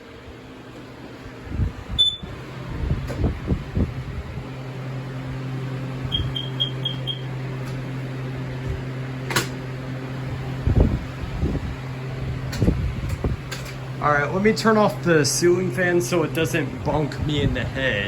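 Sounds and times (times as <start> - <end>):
ceiling fan humming: 0.0 - 18.0
quick high beeps: 6.1 - 7.2.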